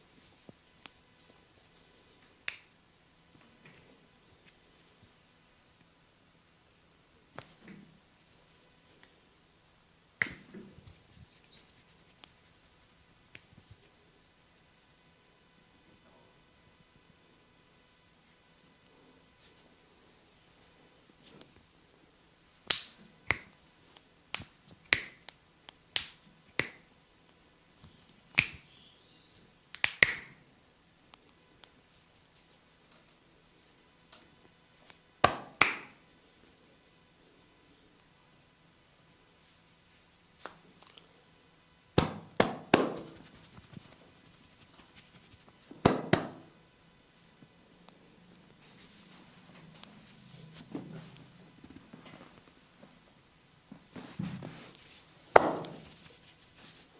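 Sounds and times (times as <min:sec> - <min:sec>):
hands snapping: 0:02.4 - 0:02.7, 0:10.2 - 0:10.5, 0:22.7 - 0:23.5, 0:24.3 - 0:25.4, 0:26.0 - 0:26.8, 0:28.3 - 0:28.6, 0:29.7 - 0:30.4, 0:35.2 - 0:36.0.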